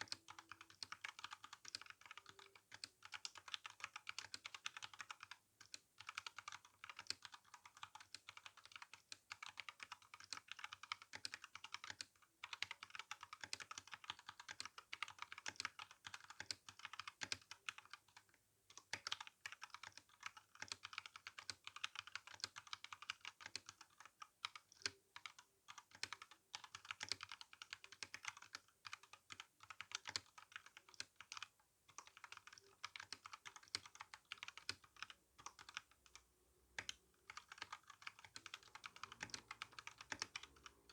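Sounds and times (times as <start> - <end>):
mechanical keyboard typing: 0.0 - 36.2, 36.8 - 40.9.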